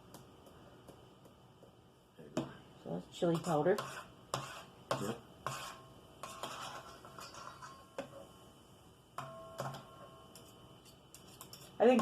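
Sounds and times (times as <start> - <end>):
kitchen utensils clinking: 6.2 - 8.2.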